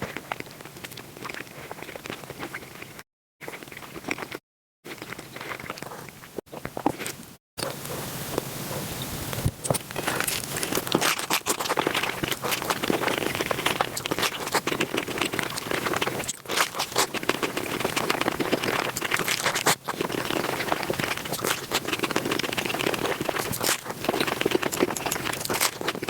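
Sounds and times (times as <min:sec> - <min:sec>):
crunching and chewing: 0:00.0 - 0:08.8, 0:09.4 - 0:26.0.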